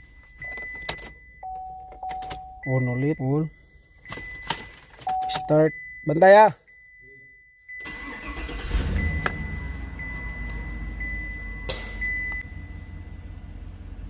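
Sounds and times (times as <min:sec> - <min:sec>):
car engine starting and idling: 0:07.7 - 0:14.0.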